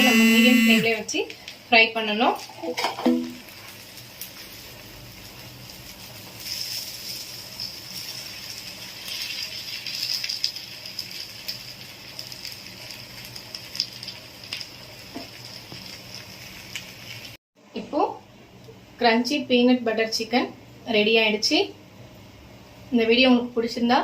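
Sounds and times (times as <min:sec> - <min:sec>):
chicken sizzling in oil: 0:01.3 - 0:17.4.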